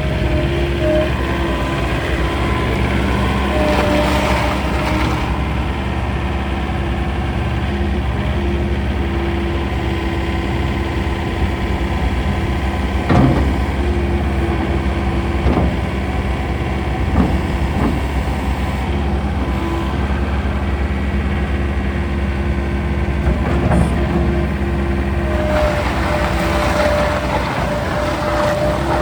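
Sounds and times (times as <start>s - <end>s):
diesel engine running: 0.0s - 29.0s
short knocks and clunks: 13.0s - 16.2s, 17.0s - 18.5s, 23.1s - 29.0s.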